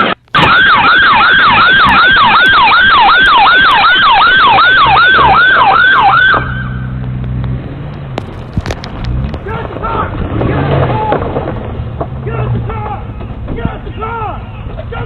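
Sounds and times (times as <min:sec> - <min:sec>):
police siren yelping: 0:00.4 - 0:06.7.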